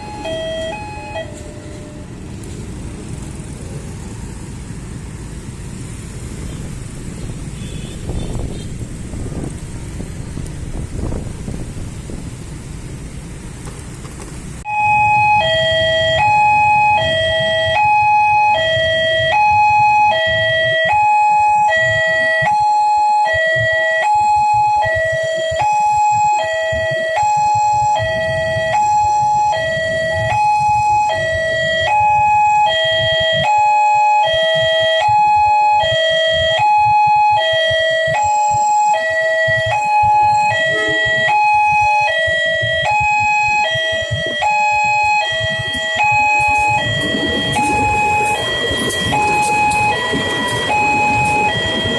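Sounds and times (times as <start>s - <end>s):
railroad crossing warning siren: 0.0s - 3.6s, 14.6s - 51.9s
low traffic rumble: 0.0s - 51.9s.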